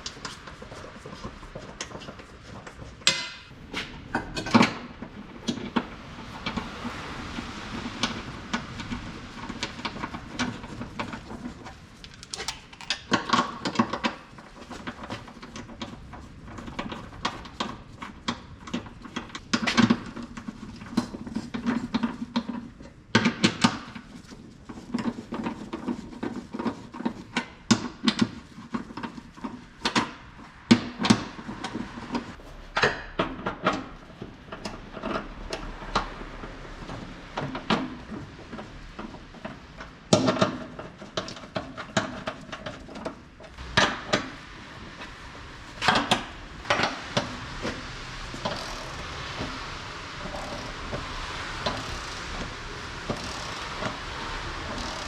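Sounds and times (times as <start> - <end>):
metal tools clinking and knocking: 12.0 - 13.2.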